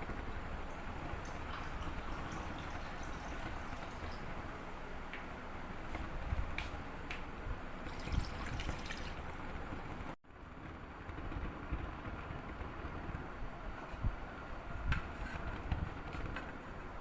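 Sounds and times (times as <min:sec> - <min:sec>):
water trickling and dripping: 0:00.4 - 0:05.3, 0:07.8 - 0:09.5.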